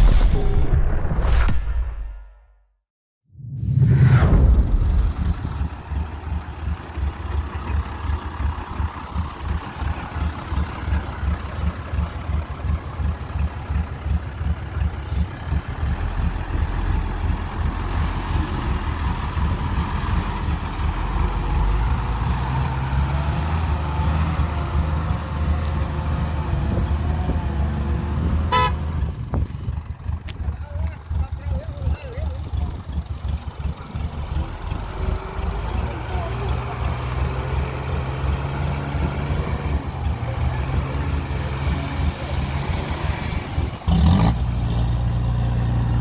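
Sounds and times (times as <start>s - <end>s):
heavy diesel engine rumbling: 4.2s - 46.0s
short horn toot: 28.5s - 28.8s.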